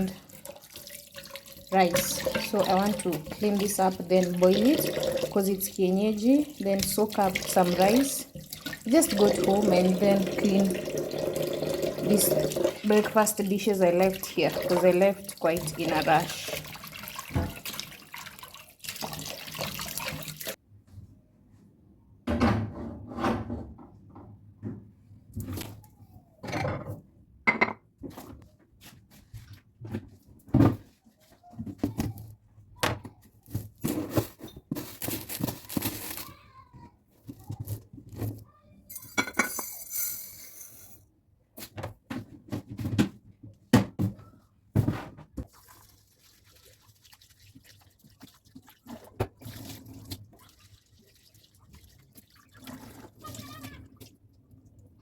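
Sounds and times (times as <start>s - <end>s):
dishes clattering in a sink: 1.9s - 3.8s, 15.6s - 17.9s, 26.4s - 28.2s, 38.9s - 41.0s.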